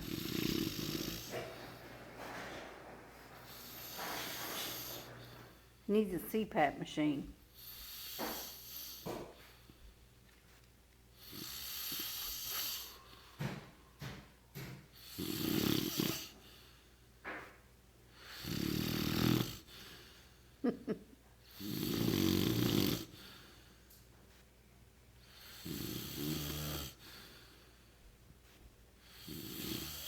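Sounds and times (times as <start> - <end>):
man snoring heavily: 0.0 - 1.4, 11.2 - 13.0, 15.0 - 16.4, 18.2 - 19.7, 21.5 - 23.2, 25.4 - 27.0, 29.1 - 30.0
quiet breathing: 0.0 - 6.0, 7.4 - 20.6, 23.0 - 30.0
person speaking: 5.9 - 7.4.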